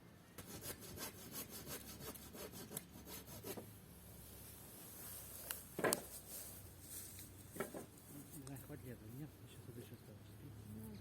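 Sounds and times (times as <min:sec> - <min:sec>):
saw cutting through wood: 0:00.4 - 0:03.6.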